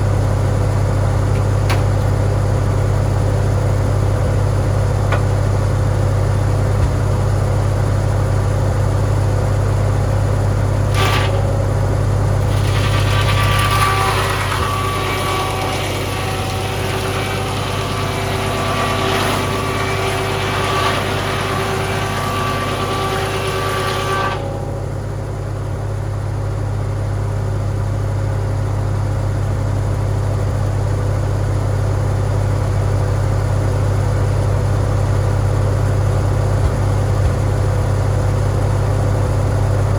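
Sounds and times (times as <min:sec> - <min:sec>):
tractor engine running: 0:00.0 - 0:13.0, 0:24.6 - 0:39.9
saw blade cutting wood: 0:10.9 - 0:25.1, 0:36.2 - 0:38.1
sharp knock: 0:36.6 - 0:38.1.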